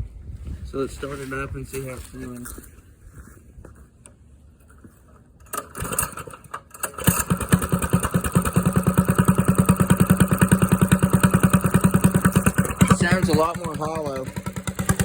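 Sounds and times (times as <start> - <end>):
engine cranking and idling: 5.4 - 15.0.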